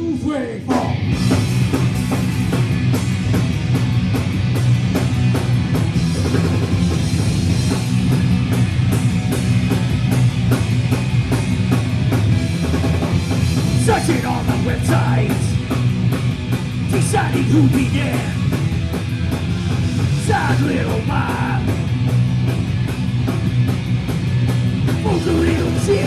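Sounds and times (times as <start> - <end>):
punk band playing live: 0.0 - 26.0.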